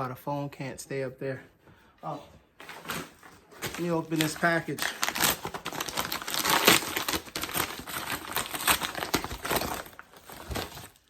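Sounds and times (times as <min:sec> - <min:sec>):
packaging torn open and crinkled: 0:02.6 - 0:11.0.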